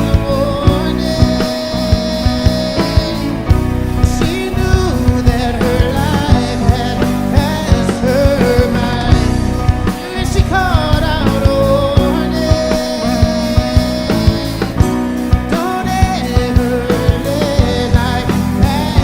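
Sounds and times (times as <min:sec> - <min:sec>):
drum kit beat: 0:00.0 - 0:19.0
guitars: 0:00.0 - 0:19.0
melodic lead line bending: 0:00.0 - 0:19.0.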